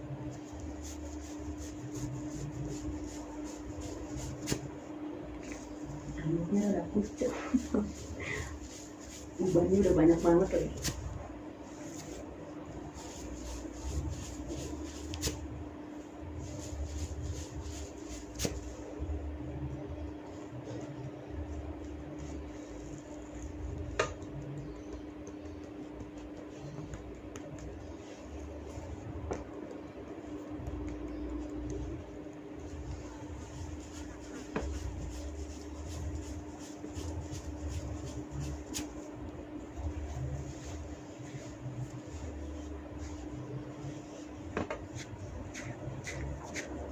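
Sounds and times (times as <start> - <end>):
steady low hum: 0.0 - 46.9
hands rubbing through hair: 0.2 - 19.0, 32.6 - 46.9.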